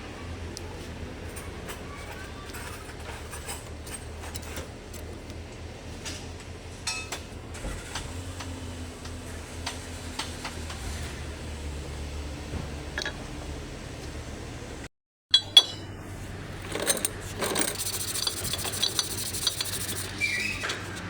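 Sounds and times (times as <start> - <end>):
tools clicking on metal: 16.6 - 20.2.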